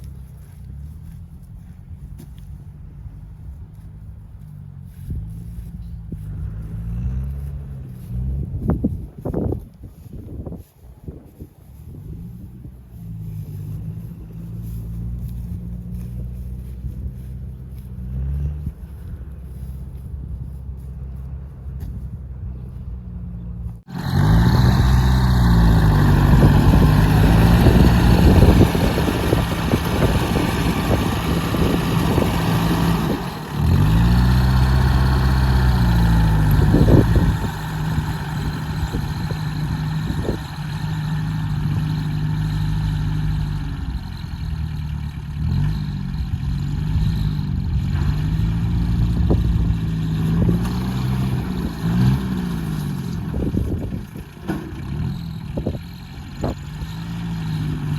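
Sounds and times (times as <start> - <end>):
engine revving up and down: 6.1 - 8.7, 12.3 - 19.8, 22.4 - 57.9.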